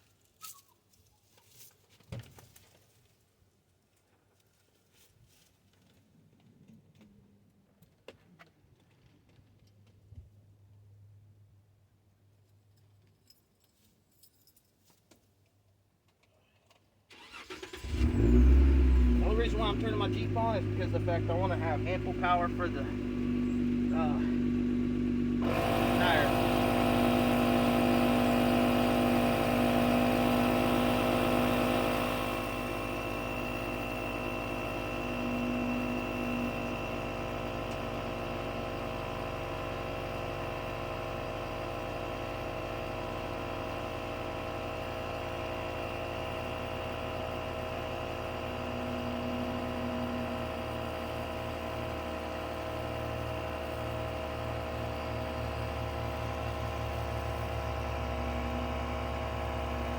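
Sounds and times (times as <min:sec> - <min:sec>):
car engine idling: 0:17.1 - 0:59.9.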